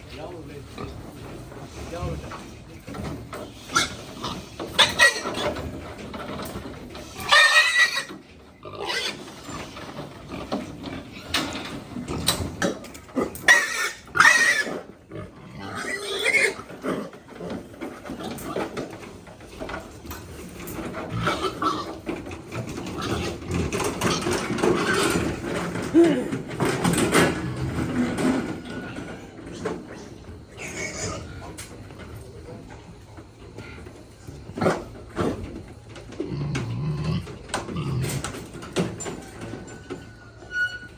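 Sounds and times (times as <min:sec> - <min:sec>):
pigs squealing: 0:00.7 - 0:18.9, 0:20.5 - 0:31.7.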